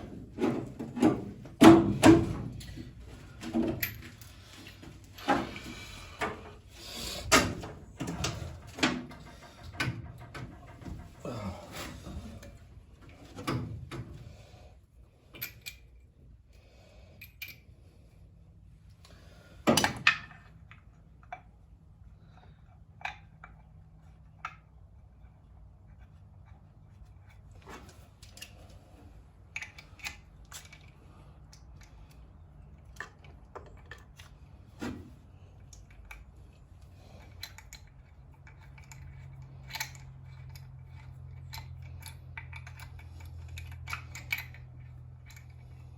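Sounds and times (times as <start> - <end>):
metal tools clinking: 37.0 - 45.9.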